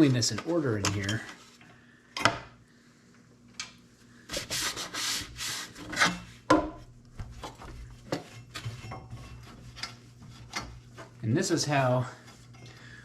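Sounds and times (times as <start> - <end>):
scrubbing strokes: 4.3 - 6.0.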